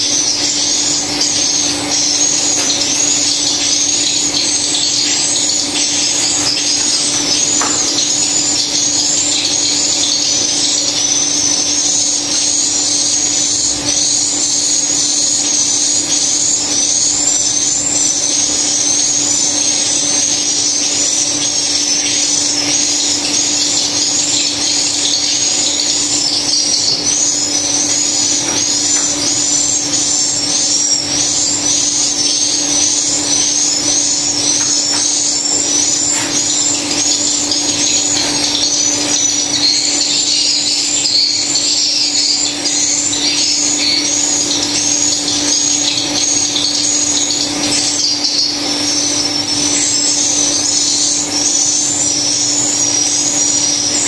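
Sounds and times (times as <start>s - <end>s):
swiftlets chirping: 19.5s - 54.0s.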